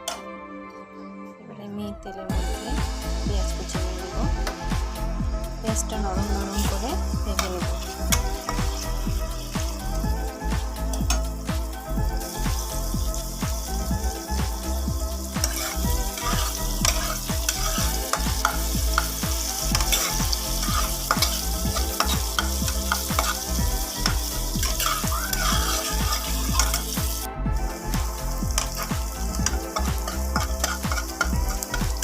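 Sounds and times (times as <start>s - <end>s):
onions sizzling in hot oil: 2.3s - 32.0s
spatula scraping a pan: 15.4s - 27.2s, 28.6s - 32.0s.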